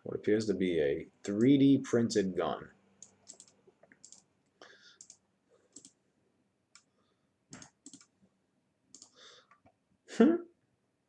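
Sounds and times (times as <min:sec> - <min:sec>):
keyboard clicks: 0:03.0 - 0:04.3, 0:05.0 - 0:06.0, 0:07.5 - 0:08.1, 0:08.9 - 0:09.8.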